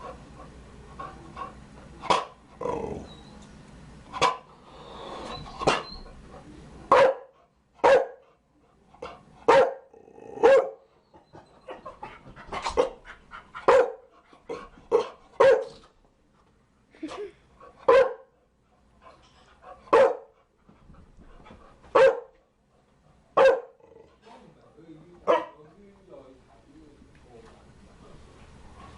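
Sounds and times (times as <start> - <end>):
dog barking deeply: 9.5 - 10.8, 13.7 - 14.1, 19.9 - 20.3, 23.4 - 24.0, 25.2 - 25.6.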